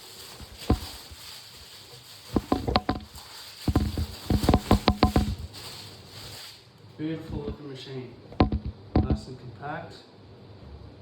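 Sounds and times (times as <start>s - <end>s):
packaging taps and crinkles: 0.0s - 6.4s
knock on packaging: 2.3s - 5.6s, 8.4s - 9.2s.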